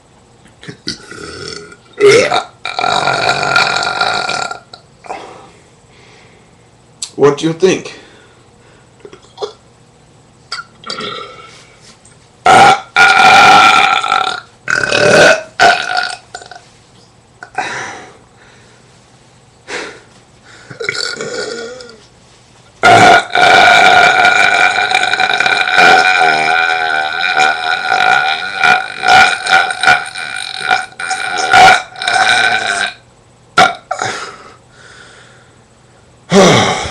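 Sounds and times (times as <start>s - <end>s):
man burping loudly: 0.6s - 4.8s, 10.5s - 11.5s, 12.4s - 16.6s, 20.7s - 22.0s, 22.8s - 33.0s, 33.6s - 34.4s, 36.3s - 36.9s.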